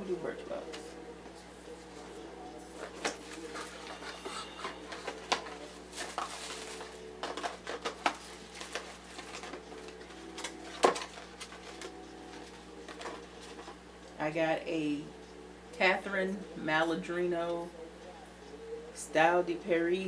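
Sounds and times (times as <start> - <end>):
paper rustling: 0.7 - 13.8.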